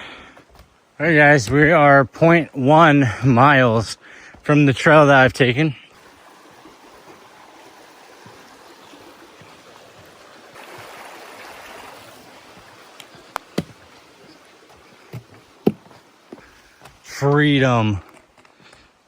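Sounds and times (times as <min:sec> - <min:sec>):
steady rushing outdoor noise: 0:06.0 - 0:19.0.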